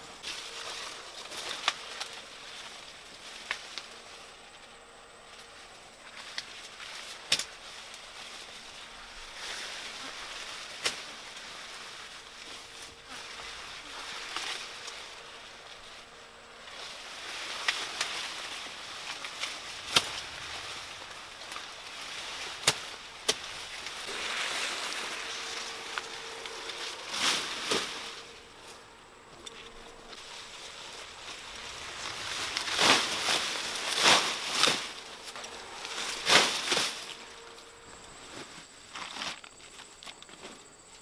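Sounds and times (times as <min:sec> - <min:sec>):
rustling and handling noise: 0:00.0 - 0:41.0.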